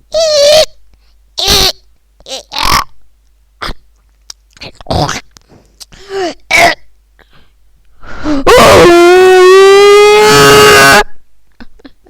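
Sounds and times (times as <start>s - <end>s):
loud held cry: 8.4s - 11.1s.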